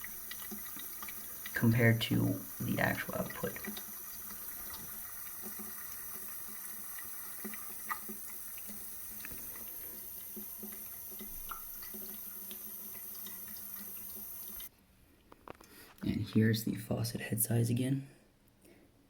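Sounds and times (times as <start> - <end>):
faucet running into sink: 0.0 - 14.7.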